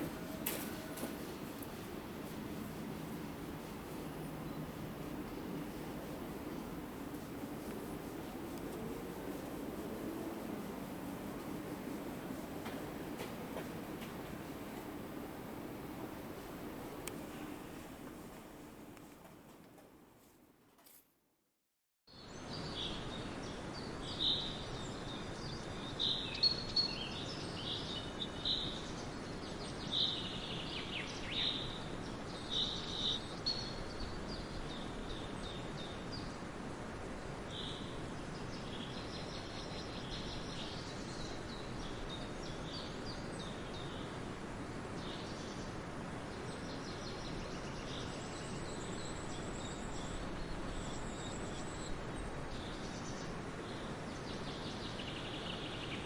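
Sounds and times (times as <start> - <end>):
small birds chirping: 0.0 - 18.6
steady background hum: 0.0 - 20.4.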